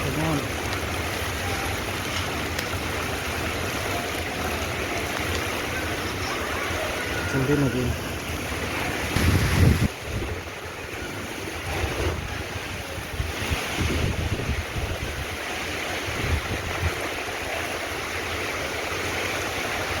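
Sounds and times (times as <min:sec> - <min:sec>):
heavy rain hiss: 0:00.0 - 0:20.0
wind buffeting microphone: 0:01.8 - 0:17.4.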